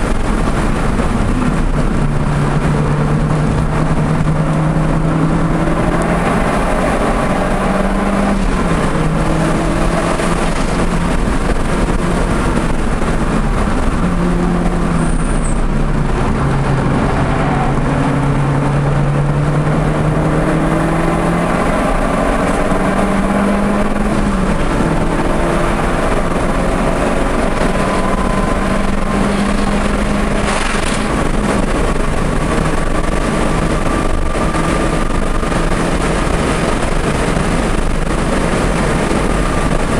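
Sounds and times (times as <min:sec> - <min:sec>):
car engine revving: 0:00.0 - 0:39.9
road and wind noise: 0:00.0 - 0:39.9.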